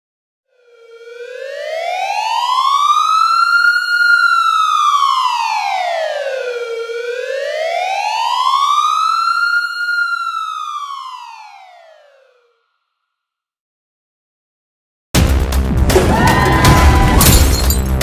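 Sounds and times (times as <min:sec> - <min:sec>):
wailing siren: 0:00.5 - 0:13.0, 0:16.0 - 0:17.7.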